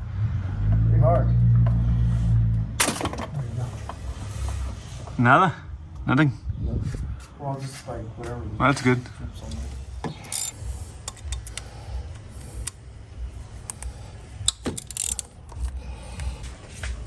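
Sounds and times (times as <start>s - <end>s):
hand ratchet clicking: 10.3s - 11.7s, 13.7s - 16.3s
metallic tool clicks: 10.3s - 11.7s, 13.7s - 15.8s.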